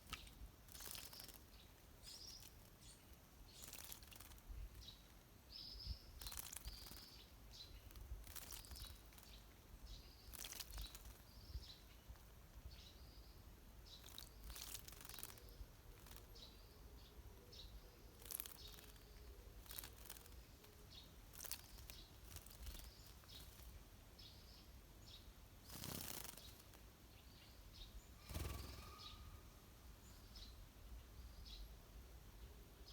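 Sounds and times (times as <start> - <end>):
wing flutters: 0.0 - 1.4, 3.6 - 4.4, 6.2 - 7.1, 7.9 - 9.4, 10.3 - 11.2, 14.0 - 16.3, 18.2 - 19.0, 19.6 - 20.4, 21.3 - 23.7, 25.7 - 26.8, 28.2 - 29.4
small birds chirping: 0.0 - 32.9.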